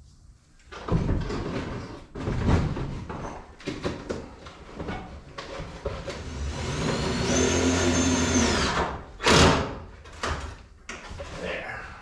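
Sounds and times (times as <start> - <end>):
power drill running: 6.3 - 8.9.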